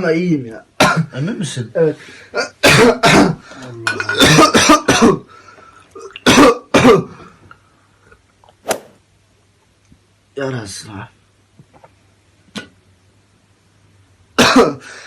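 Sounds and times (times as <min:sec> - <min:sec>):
man coughing: 0:02.4 - 0:03.4, 0:04.1 - 0:05.3, 0:06.3 - 0:07.2, 0:14.4 - 0:14.8.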